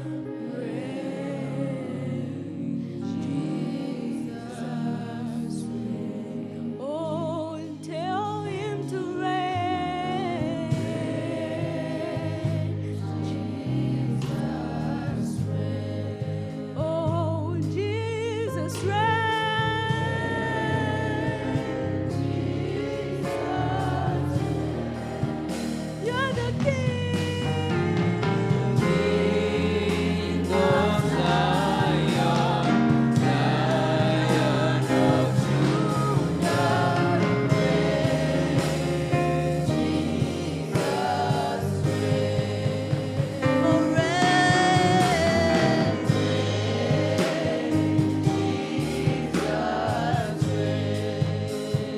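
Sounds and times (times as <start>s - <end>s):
gospel singing: 0.0s - 51.9s
bass notes: 9.3s - 51.9s
steady drum beat: 10.5s - 17.4s, 18.8s - 51.9s.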